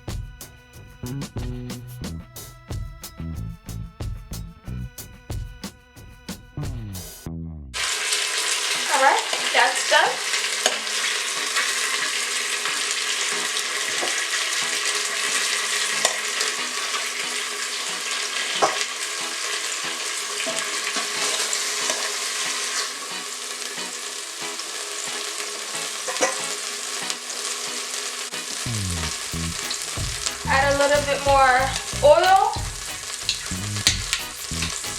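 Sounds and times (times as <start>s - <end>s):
fish sizzling in oil: 7.8s - 34.9s.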